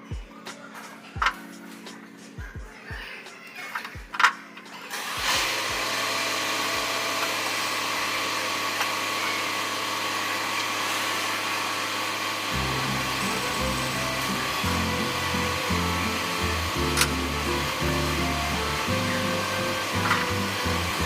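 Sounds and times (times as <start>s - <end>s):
music bass line: 12.5s - 21.0s.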